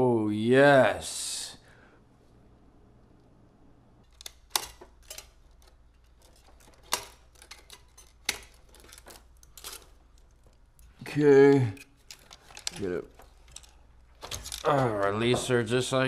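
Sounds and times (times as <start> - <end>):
computer parts clicking and knocking: 4.0 - 15.6.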